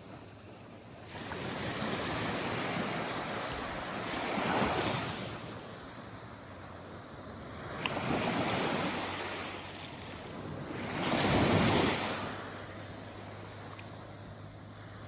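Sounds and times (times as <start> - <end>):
small waves washing ashore: 0.0 - 15.0.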